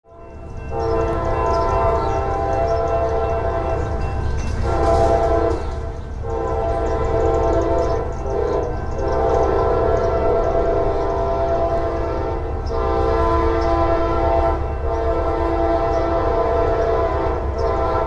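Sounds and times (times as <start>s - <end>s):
locomotive air horn blasts: 0.1s - 4.0s, 4.6s - 18.0s
locomotive engine rumble: 0.1s - 18.0s.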